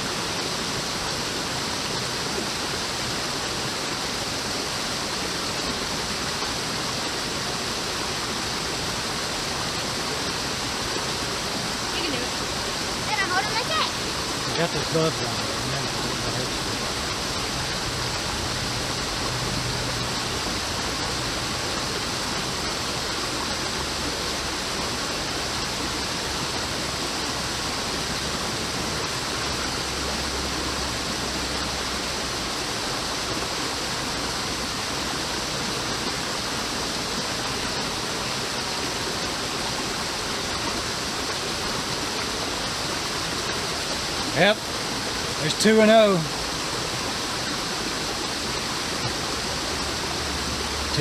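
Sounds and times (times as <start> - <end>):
creek water rushing over rocks: 0.0 - 51.0.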